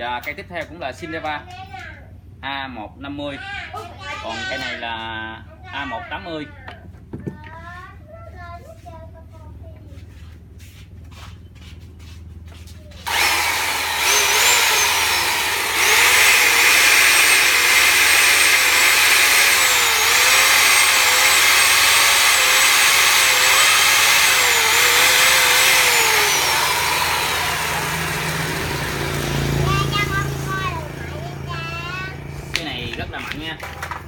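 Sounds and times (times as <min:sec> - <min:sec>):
electric chainsaw cutting wood: 0:13.0 - 0:31.0.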